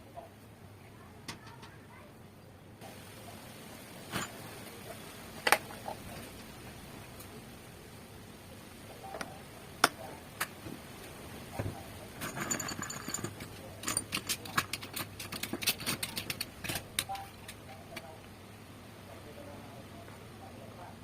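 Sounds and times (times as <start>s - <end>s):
small hard parts clicking: 12.2s - 18.1s.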